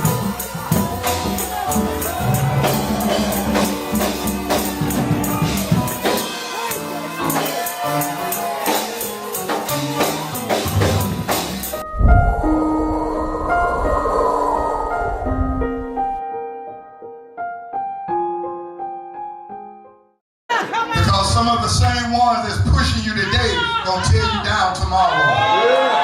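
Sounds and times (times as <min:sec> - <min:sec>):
drums beating: 0:00.0 - 0:11.8, 0:20.5 - 0:24.4
gospel praise music: 0:00.0 - 0:16.0.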